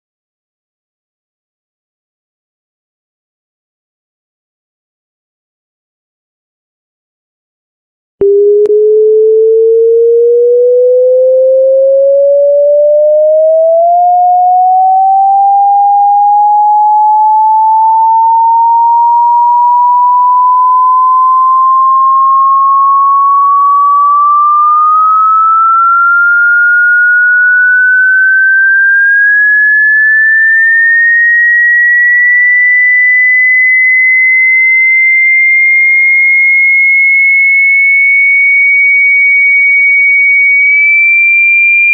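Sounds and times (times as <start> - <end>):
rising sine-wave test tone: 8.2 - 41.9.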